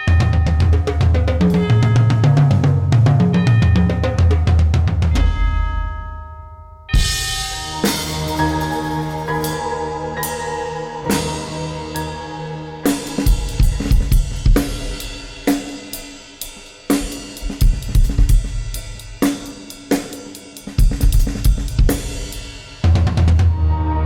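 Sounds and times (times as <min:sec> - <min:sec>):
drum kit with cymbals: 0:00.0 - 0:06.0, 0:06.9 - 0:23.6
heavy bass: 0:07.0 - 0:15.6
held pitched notes: 0:07.0 - 0:16.0.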